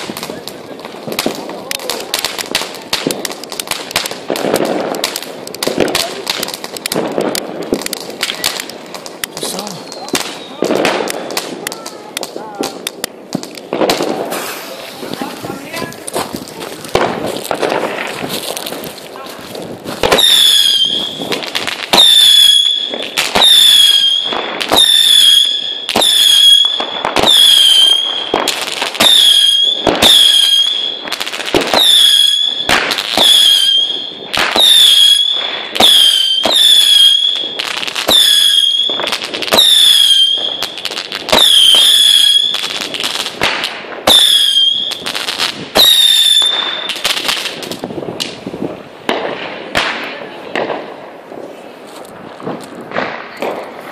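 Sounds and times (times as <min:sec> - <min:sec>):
firework bangs: 0:00.0 - 0:53.9
whistling firework shots: 0:09.3 - 0:12.8, 0:13.4 - 0:18.2, 0:19.9 - 0:48.5.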